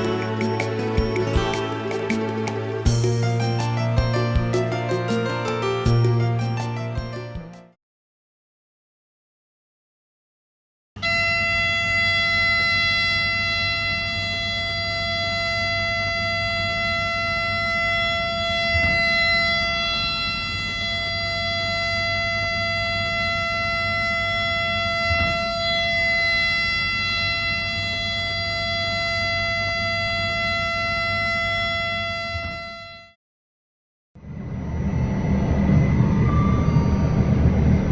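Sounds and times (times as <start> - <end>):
steady electronic signal tone: 11.0 - 33.2, 34.2 - 37.9
low rumble: 34.2 - 37.9.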